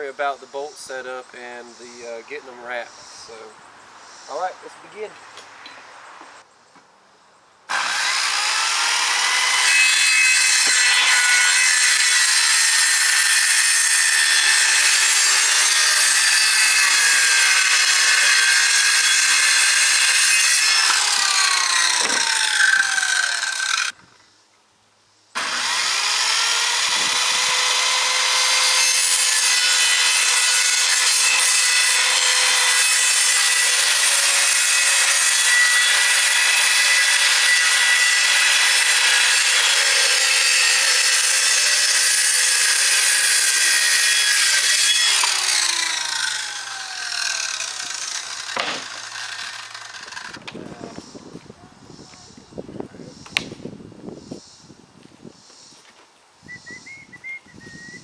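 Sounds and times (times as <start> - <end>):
power saw cutting plywood: 7.7 - 24.0, 25.4 - 51.0.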